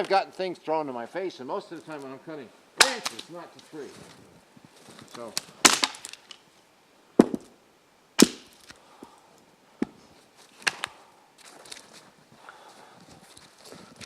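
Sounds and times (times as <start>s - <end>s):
maul striking wood: 2.8s - 3.3s, 5.6s - 6.3s, 7.2s - 7.5s, 8.2s - 8.6s.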